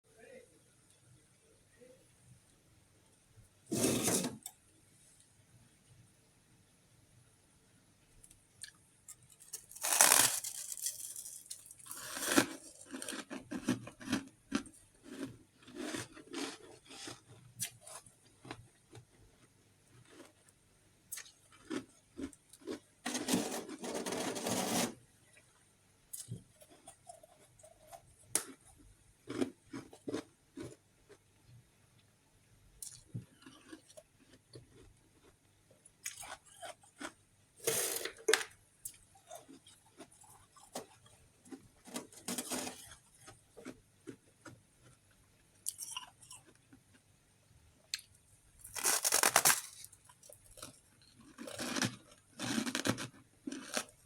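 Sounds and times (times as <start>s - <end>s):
rasping frost scrapes: 3.7s - 4.4s, 23.1s - 25.0s
ice frost crunching: 9.4s - 13.8s, 48.6s - 50.0s.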